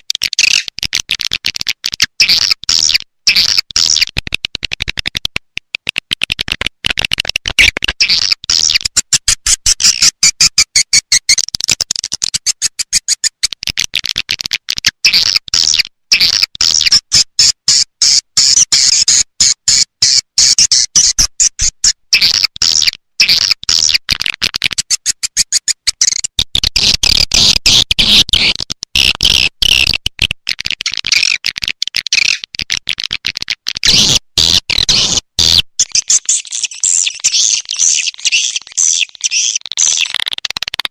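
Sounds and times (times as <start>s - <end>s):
swiftlet chirping and twittering: 8.0s - 13.5s, 15.2s - 24.0s, 24.7s - 26.3s, 35.8s - 40.2s.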